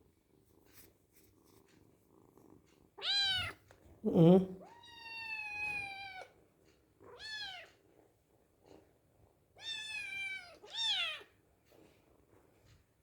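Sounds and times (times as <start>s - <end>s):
kitten meowing: 3.0s - 3.6s, 4.6s - 6.3s, 9.6s - 11.2s.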